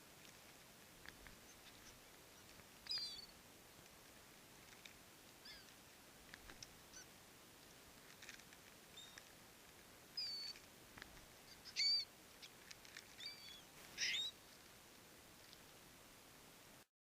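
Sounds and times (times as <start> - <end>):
gulls calling: 11.4 - 12.6, 13.2 - 14.4.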